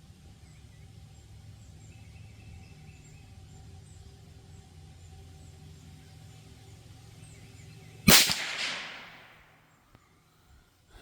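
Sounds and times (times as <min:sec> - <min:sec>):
rifle shot: 0:08.1 - 0:09.6.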